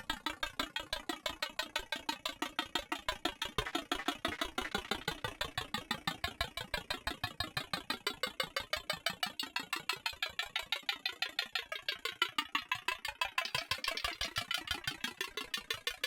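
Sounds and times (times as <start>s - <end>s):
rapid machine-like pulsing: 2.4s - 6.0s, 10.8s - 16.0s.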